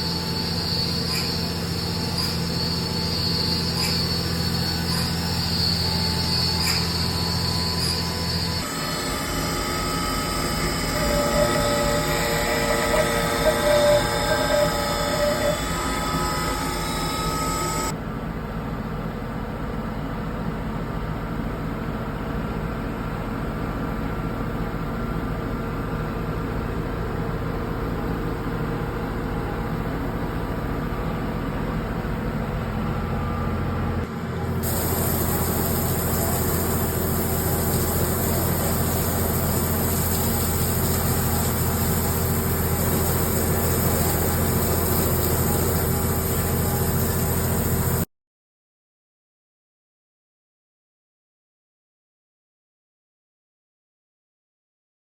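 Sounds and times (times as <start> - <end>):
cnc machine cutting metal: 0.0 - 17.9, 34.4 - 48.0.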